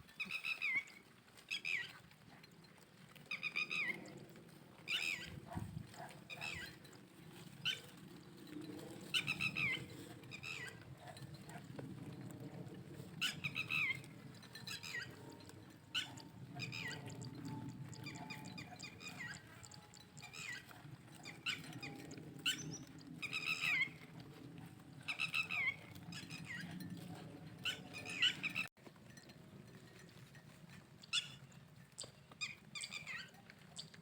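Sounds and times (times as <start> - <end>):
high-pitched animal calls: 0.2 - 2.0, 3.3 - 4.1, 4.9 - 5.6, 6.3 - 6.8, 9.1 - 11.2, 13.2 - 24.2, 25.0 - 26.8, 27.6 - 28.7, 31.1 - 31.4, 32.4 - 33.9.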